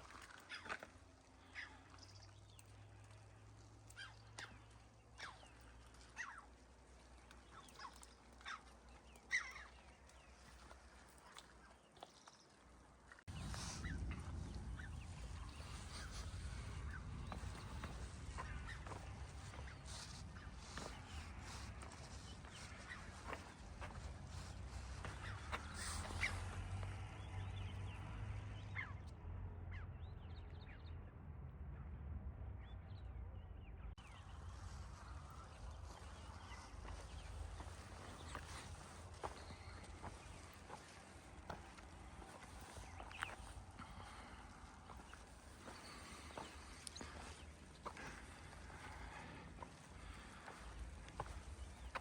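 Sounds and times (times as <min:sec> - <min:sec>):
birds calling: 0:00.0 - 0:30.9, 0:33.6 - 0:52.0
steady low rumble: 0:13.3 - 0:52.0.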